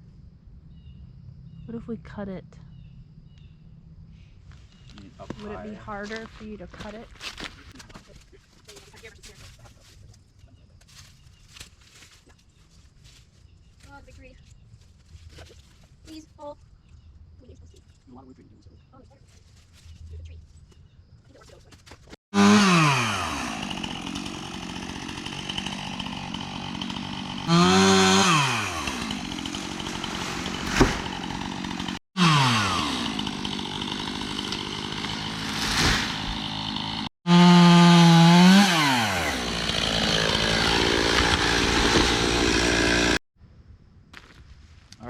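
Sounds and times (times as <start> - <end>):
chainsaw cutting wood: 22.3 - 43.2
sharp wood crack: 22.8 - 37.1, 37.8 - 43.2.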